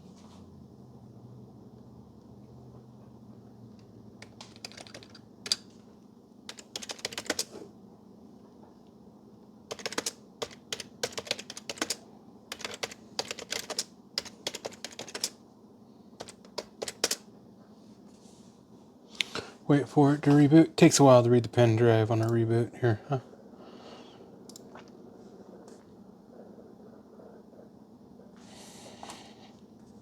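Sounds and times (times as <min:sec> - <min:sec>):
faint steady hum: 0:00.0 - 0:30.0
typing on computer keyboard: 0:03.8 - 0:05.8, 0:06.5 - 0:07.5, 0:09.7 - 0:15.4, 0:16.2 - 0:17.2.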